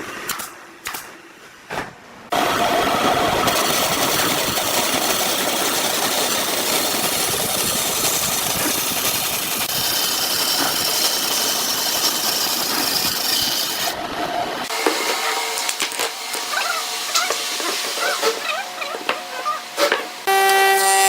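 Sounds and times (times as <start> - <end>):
tool cutting spinning wood: 3.4 - 14.0
wood lathe humming: 3.5 - 14.0.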